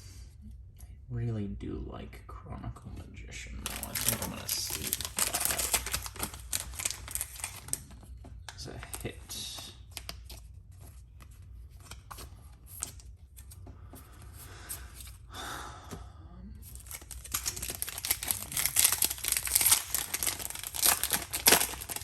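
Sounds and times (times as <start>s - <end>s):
cards and packaging handled: 3.6s - 15.2s, 16.6s - 22.0s
foil wrapper crinkling torn open: 3.7s - 7.9s, 16.8s - 22.0s.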